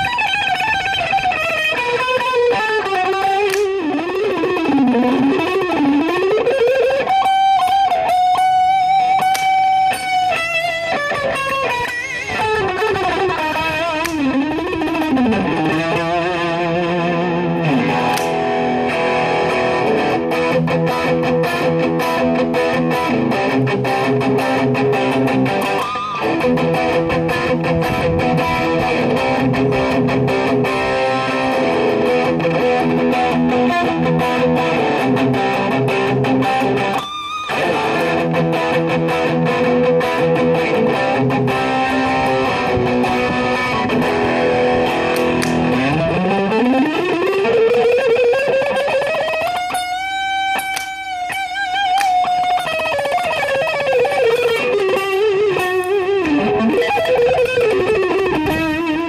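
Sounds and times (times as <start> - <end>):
overdriven electric guitar: 0.0 - 59.0.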